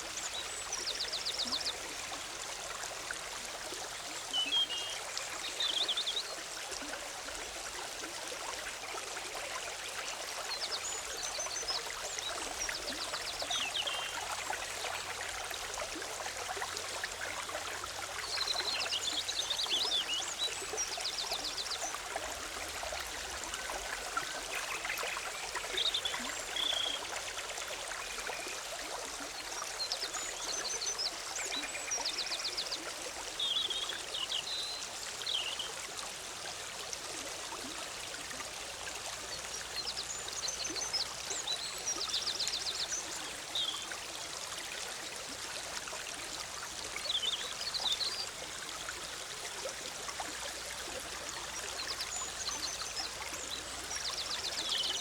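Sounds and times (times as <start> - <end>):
stream babbling over rocks: 0.0 - 55.0
songbirds singing: 51.3 - 55.0.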